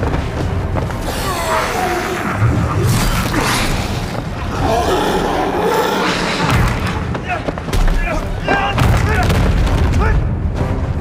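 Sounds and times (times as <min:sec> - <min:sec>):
dramatic music: 0:00.0 - 0:11.0
people shouting: 0:07.2 - 0:09.4.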